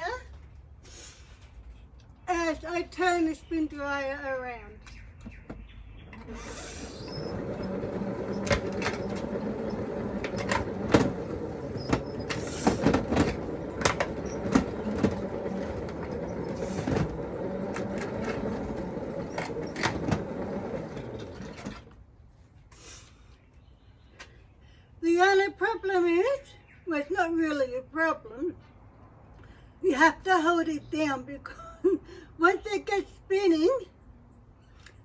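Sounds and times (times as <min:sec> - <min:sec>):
knocks and rattles: 0:05.3 - 0:22.0
spin dryer whirring hum: 0:06.1 - 0:22.0.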